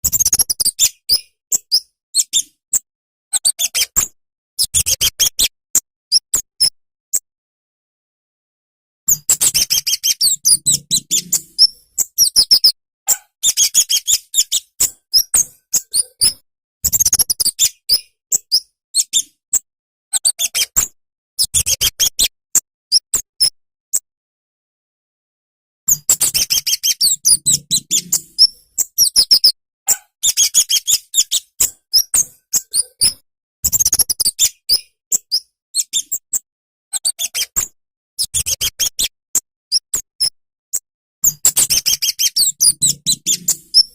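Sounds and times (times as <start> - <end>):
bird chirping twitters: 9.1 - 19.3, 25.9 - 36.3, 41.2 - 43.9.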